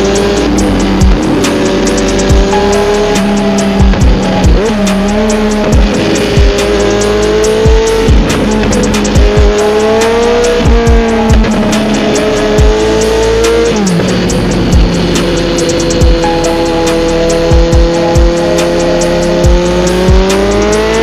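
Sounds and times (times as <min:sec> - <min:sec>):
engine-like droning tone: 0:00.0 - 0:21.0
fast hi-hat ticks: 0:00.1 - 0:16.6
bass drum kicks: 0:00.9 - 0:01.4, 0:03.2 - 0:04.9, 0:05.6 - 0:06.6, 0:07.7 - 0:09.6, 0:10.6 - 0:11.8, 0:16.0 - 0:16.3.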